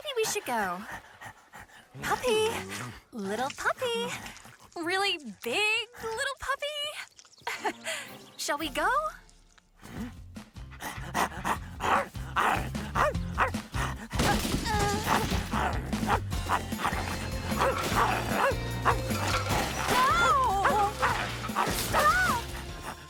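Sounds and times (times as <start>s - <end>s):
upbeat music with bass line: 15.4s - 21.6s.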